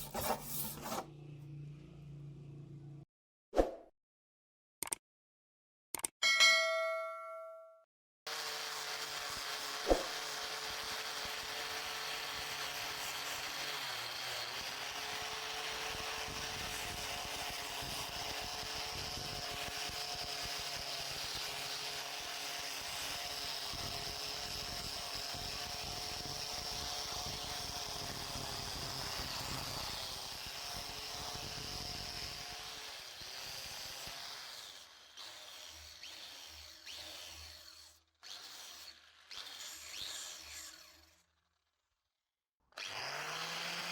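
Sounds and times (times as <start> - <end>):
sharp click: 4.8 - 5.0, 5.9 - 6.2
power tool motor running: 8.3 - 37.6, 42.8 - 43.9.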